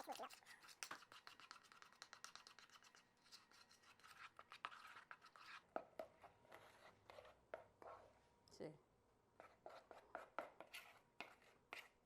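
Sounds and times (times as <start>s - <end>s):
utensil stirring batter in bowl: 0.0s - 8.2s, 9.4s - 12.0s.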